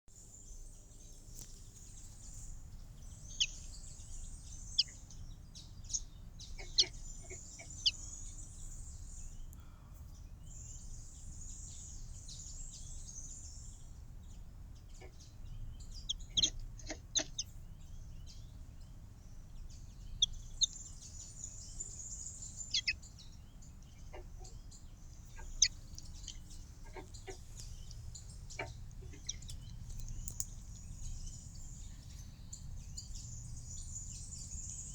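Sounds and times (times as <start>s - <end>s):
small birds twittering: 0.1s - 34.9s
low background rumble: 13.2s - 34.9s.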